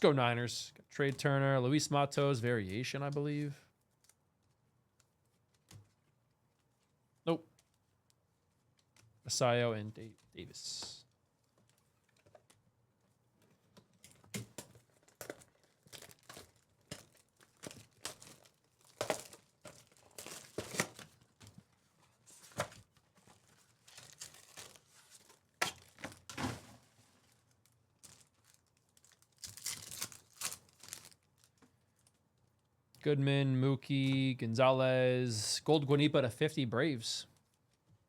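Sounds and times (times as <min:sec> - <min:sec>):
wrappers tearing and crinkling: 0:14.7 - 0:21.4, 0:23.3 - 0:26.3, 0:27.2 - 0:32.1.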